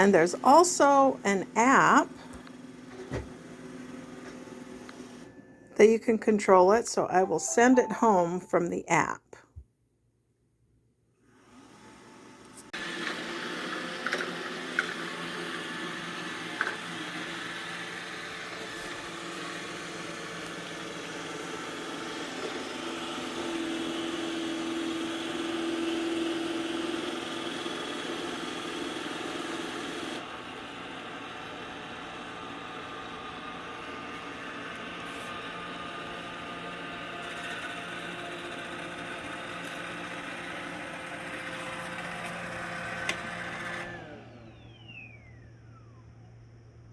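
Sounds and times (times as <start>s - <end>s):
robot vacuum running: 11.4s - 46.7s.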